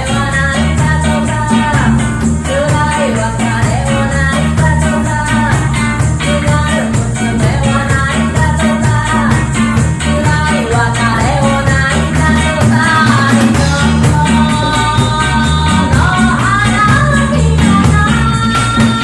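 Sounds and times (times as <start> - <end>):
live reggae band playing: 0.0 - 19.0.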